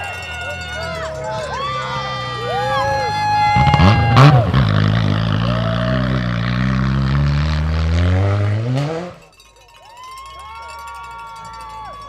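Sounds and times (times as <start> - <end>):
rally car engine accelerating: 0.5 - 9.3.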